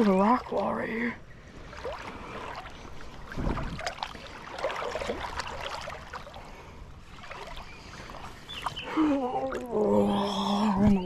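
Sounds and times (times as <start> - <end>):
creek water splashing: 0.0 - 11.0.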